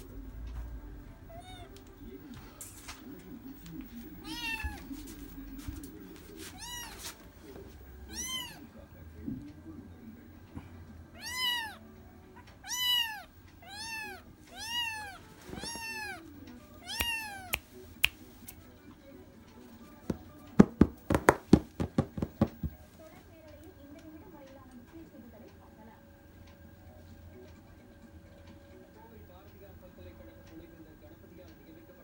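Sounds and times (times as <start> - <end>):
kitten mewing: 1.3 - 1.8, 4.2 - 4.9, 6.5 - 7.0, 8.1 - 8.7, 11.1 - 11.8, 12.4 - 16.2, 16.8 - 17.6.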